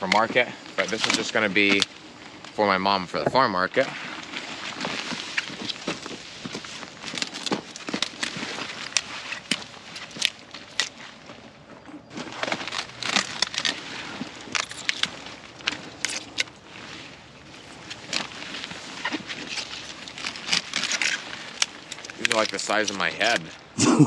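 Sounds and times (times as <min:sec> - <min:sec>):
broccoli crackling and snapping: 0:04.2 - 0:11.1, 0:12.2 - 0:17.0, 0:17.6 - 0:23.7.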